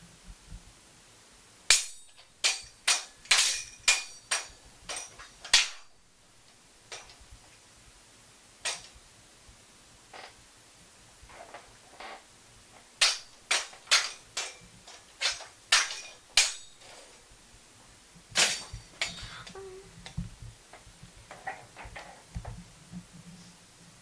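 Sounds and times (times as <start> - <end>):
soft knocks and rustles: 11.2 - 12.9, 13.6 - 23.6.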